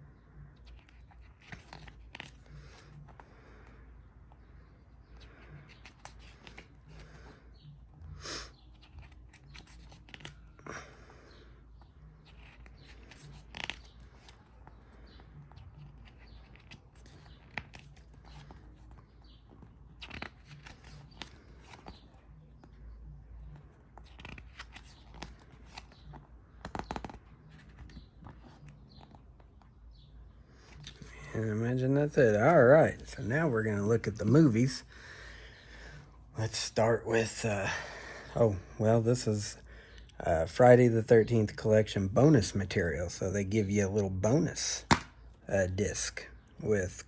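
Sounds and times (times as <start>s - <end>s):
paper pages turning: 0.4s - 3.8s, 4.5s - 11.0s, 12.0s - 29.9s, 30.6s - 34.8s
paper rustles and handling clicks: 0.6s - 3.6s, 8.8s - 11.0s, 12.0s - 29.8s.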